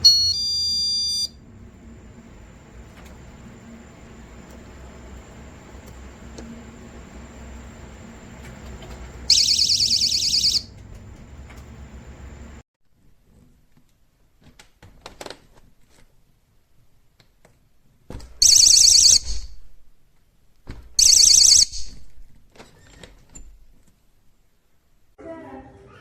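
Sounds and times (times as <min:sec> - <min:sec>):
high-pitched warbling alarm tone: 0:00.0 - 0:01.4, 0:09.3 - 0:10.7.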